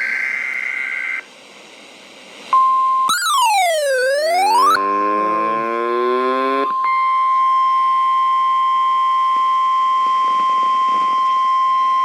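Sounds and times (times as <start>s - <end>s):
steady high alarm tone: 3.1s - 4.8s.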